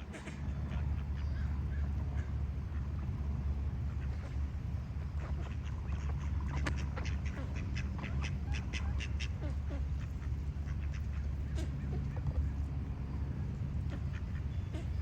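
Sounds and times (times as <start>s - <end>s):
steady low rumble: 0.0s - 15.0s
duck quacking: 5.1s - 12.6s, 13.9s - 15.0s.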